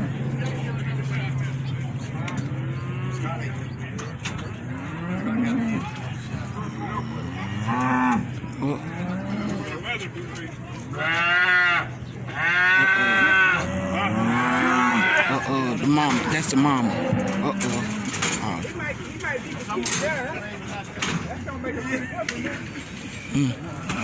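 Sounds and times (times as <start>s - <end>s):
cattle mooing: 0.0s - 3.8s, 4.6s - 10.0s, 10.9s - 18.7s.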